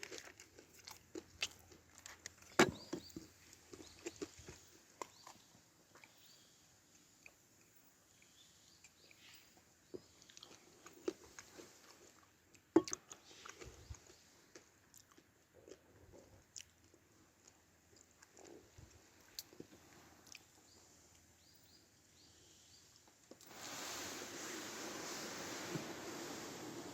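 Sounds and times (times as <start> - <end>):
soft chewing: 0.0 - 23.5.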